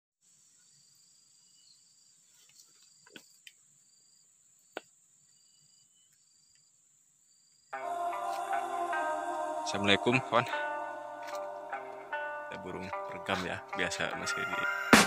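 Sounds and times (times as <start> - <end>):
cricket chirp: 0.2 - 7.9
crickets droning: 0.2 - 9.1.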